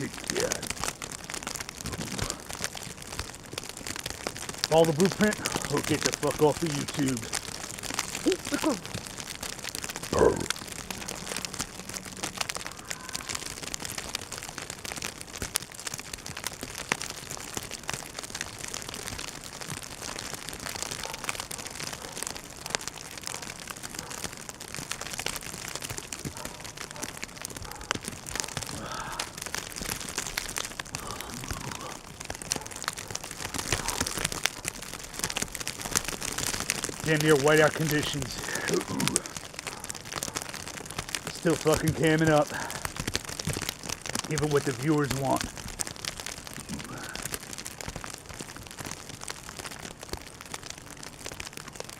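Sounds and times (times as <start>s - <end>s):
noisy hiss: 0.0s - 0.8s, 8.2s - 9.0s, 37.0s - 39.4s
snow hitting microphone: 36.8s - 39.5s.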